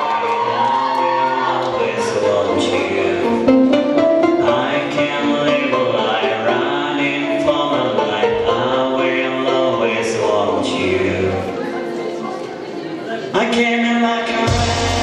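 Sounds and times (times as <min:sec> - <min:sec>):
instrumental music: 0:02.0 - 0:12.6.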